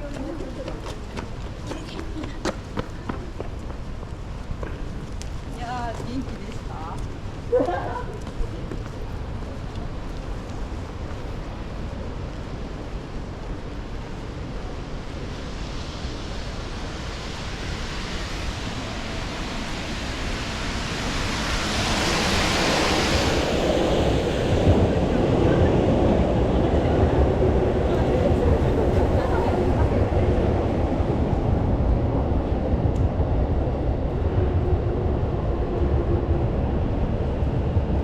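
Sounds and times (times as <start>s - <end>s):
wind buffeting microphone: 0.0s - 38.0s
rain hiss: 4.1s - 24.6s
low rumble: 18.0s - 38.0s.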